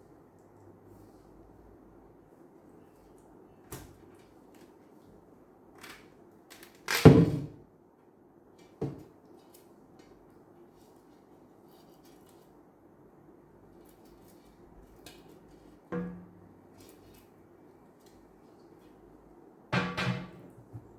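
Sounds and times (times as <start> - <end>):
hard objects knocking and clunking: 15.9 - 16.5, 19.8 - 20.9.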